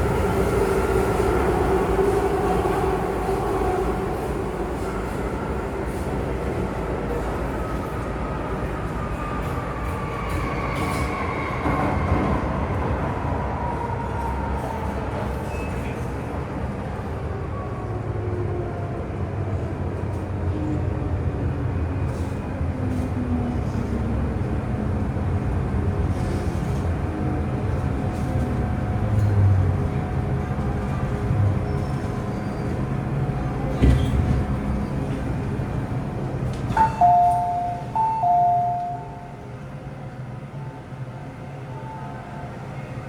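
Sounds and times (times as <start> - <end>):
train wheels and motors rumbling: 19.8 - 41.2.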